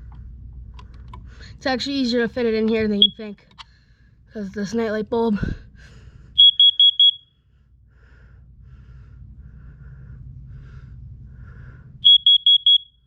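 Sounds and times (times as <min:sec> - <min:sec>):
faint low rumble: 0:00.0 - 0:06.5, 0:07.3 - 0:13.0
carbon monoxide alarm beeps: 0:03.0 - 0:03.4, 0:06.4 - 0:07.4, 0:12.0 - 0:13.0.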